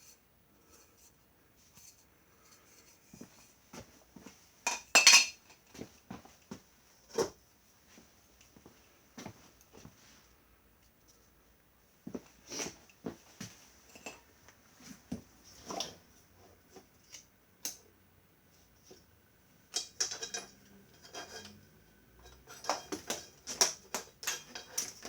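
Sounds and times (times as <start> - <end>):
hard parts clicking and rattling: 19.7 - 25.0.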